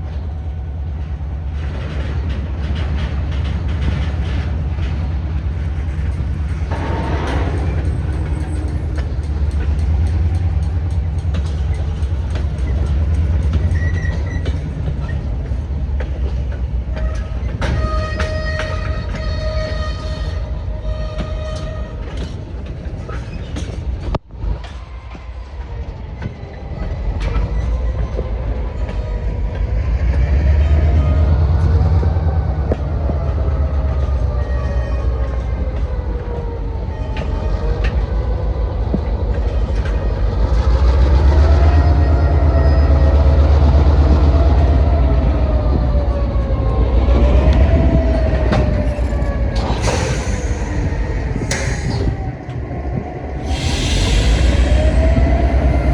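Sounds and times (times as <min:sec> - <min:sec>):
freight train rumbling: 0:00.0 - 0:55.9
metallic squeal: 0:53.4 - 0:55.9.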